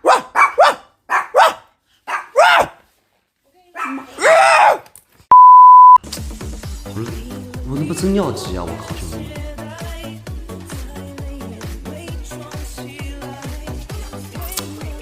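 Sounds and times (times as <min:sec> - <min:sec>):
small dog barking: 0:00.0 - 0:02.8, 0:03.8 - 0:04.8
electronic beep: 0:05.3 - 0:06.0.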